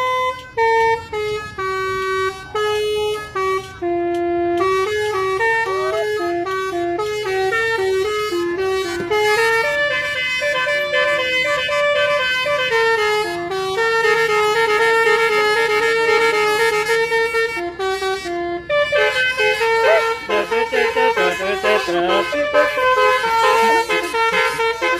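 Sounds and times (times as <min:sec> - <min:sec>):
bus horn playing a melody: 0:00.0 - 0:24.9.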